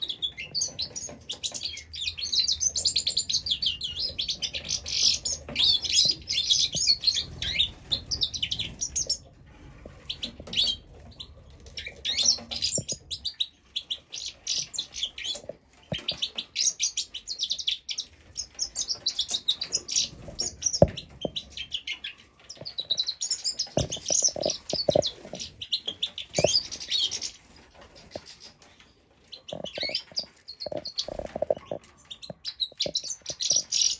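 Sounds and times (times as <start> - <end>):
young birds chirping: 0.0 - 33.9
soft knocks: 23.8 - 25.4.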